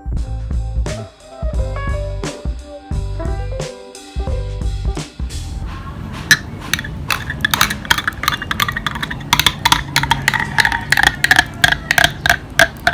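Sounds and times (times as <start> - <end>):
spoon clinking in a glass: 6.3 - 12.9.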